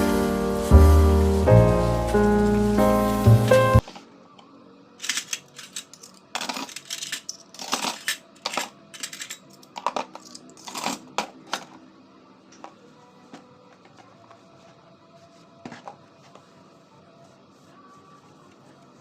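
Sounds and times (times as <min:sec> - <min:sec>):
small hard objects clicking and rattling: 0:05.0 - 0:11.7.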